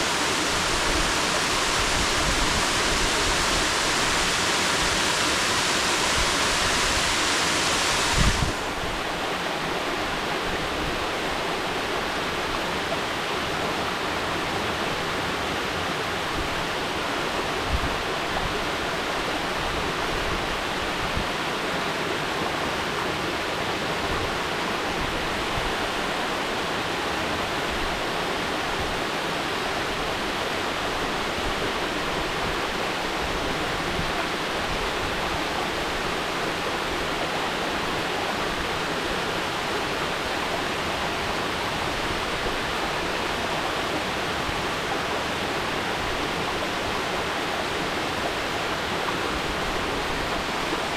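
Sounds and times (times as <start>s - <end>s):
waterfall roaring: 0.0s - 10.7s.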